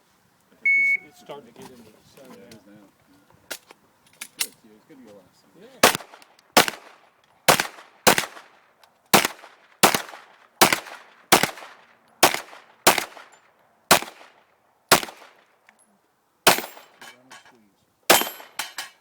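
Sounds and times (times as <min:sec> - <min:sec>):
pistol shots: 0:05.8 - 0:15.5, 0:16.4 - 0:17.0, 0:18.1 - 0:18.8.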